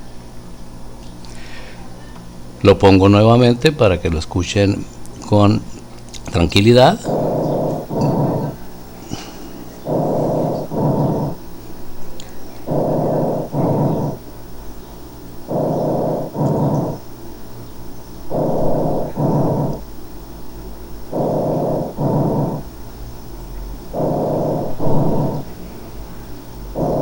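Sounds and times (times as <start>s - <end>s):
breathing through stethoscope: 1.3s - 1.9s, 6.7s - 11.4s, 12.7s - 14.2s, 15.5s - 17.0s, 18.3s - 19.8s, 21.1s - 22.7s, 23.9s - 27.0s.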